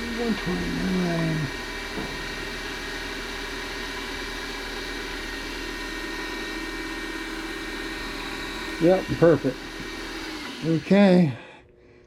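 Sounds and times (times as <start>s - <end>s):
milling machine motor humming: 0.0s - 11.4s.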